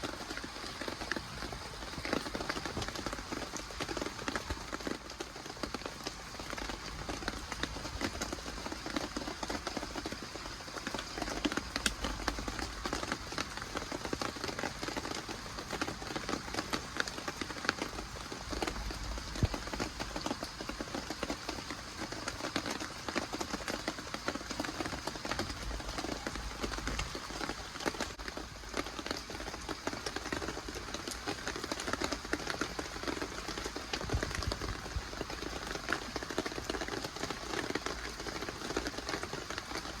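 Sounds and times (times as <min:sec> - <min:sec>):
steady rain falling: 0:00.0 - 0:40.0.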